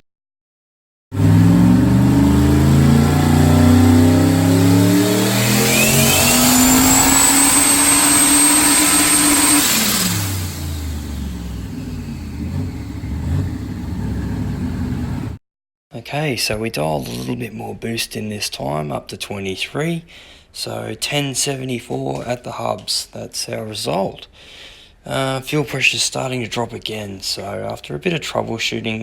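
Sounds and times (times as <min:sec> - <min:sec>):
engine revving under load: 0:01.1 - 0:15.4
turbo whine: 0:01.2 - 0:15.4.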